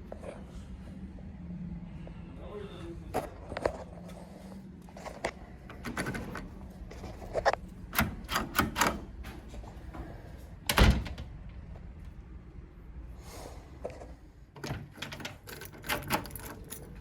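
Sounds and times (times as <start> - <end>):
door lock clicks and knocks: 7.9 - 9.1.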